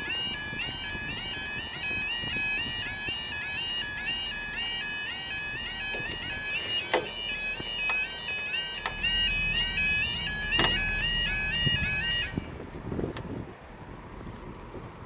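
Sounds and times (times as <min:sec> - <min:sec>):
electronic two-tone alarm warbling: 0:00.0 - 0:12.6
sharp knocks: 0:10.5 - 0:11.0.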